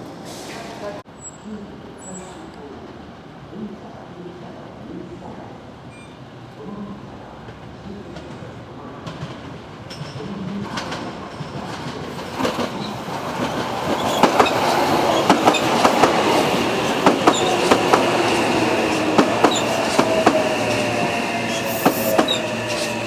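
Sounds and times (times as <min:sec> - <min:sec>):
electric train passing: 0:02.6 - 0:23.0
wheels clacking over rail joints: 0:07.4 - 0:23.0.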